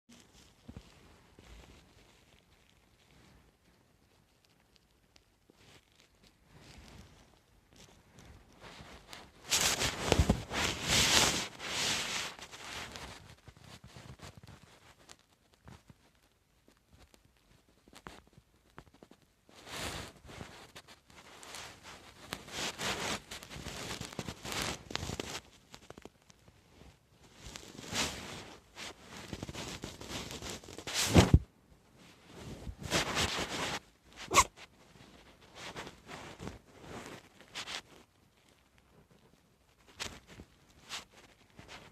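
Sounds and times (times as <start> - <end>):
cat sneezing: 34.2 - 34.5.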